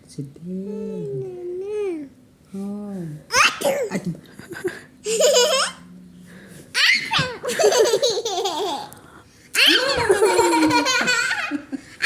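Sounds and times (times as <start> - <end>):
young child laughing: 3.4 - 5.8, 6.8 - 8.9, 9.6 - 11.8.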